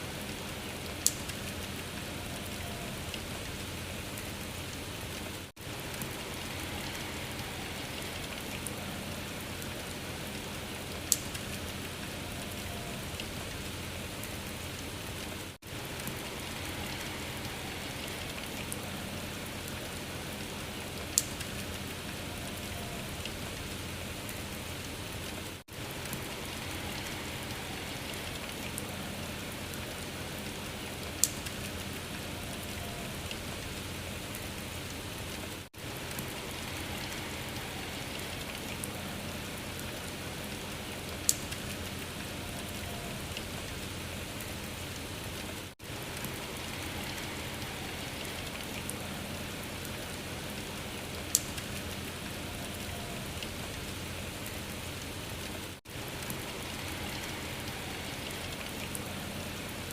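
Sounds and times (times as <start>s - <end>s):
rain-like hiss and patter: 0.0s - 59.9s
sharp tick: 1.0s - 1.4s, 11.1s - 11.4s, 21.2s - 21.5s, 41.3s - 41.6s.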